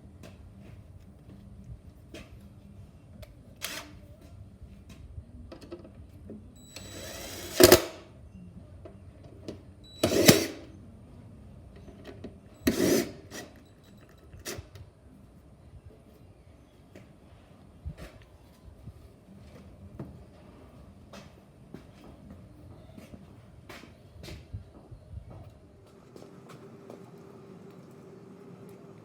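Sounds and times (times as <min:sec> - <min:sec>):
power drill running: 0:06.6 - 0:08.1, 0:09.9 - 0:10.7, 0:12.6 - 0:13.5, 0:25.9 - 0:29.0.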